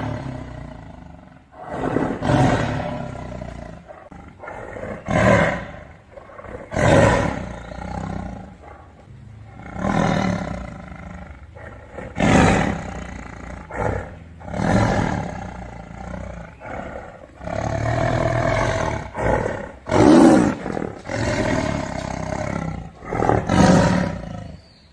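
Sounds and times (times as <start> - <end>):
tiger roaring: 0.0 - 24.7.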